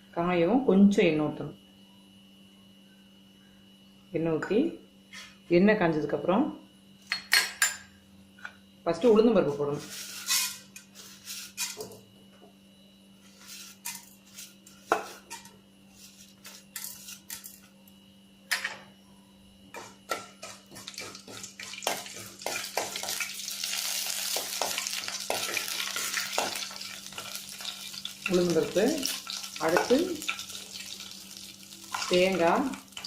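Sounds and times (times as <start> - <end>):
frying sizzle: 20.4 - 33.0
metal spoon clinking and scraping pan: 29.0 - 33.0.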